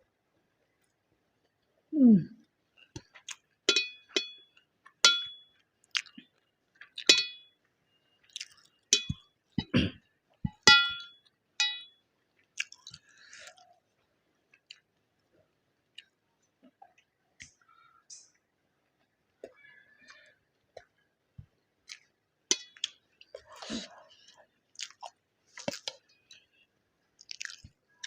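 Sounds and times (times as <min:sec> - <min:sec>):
chewing and mouth sounds: 0:02.9 - 0:03.6, 0:05.8 - 0:07.1, 0:08.2 - 0:08.9, 0:12.4 - 0:15.0, 0:21.8 - 0:26.6, 0:27.2 - 0:28.0
metallic clinks on a plate: 0:03.7 - 0:04.4, 0:05.1 - 0:05.4, 0:07.1 - 0:07.4, 0:09.0 - 0:09.2, 0:10.7 - 0:11.9.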